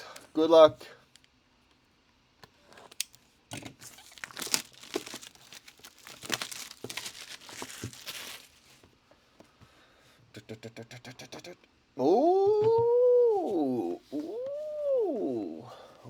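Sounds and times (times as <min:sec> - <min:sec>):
plastic wrapper tearing and crinkling: 0:02.8 - 0:08.8.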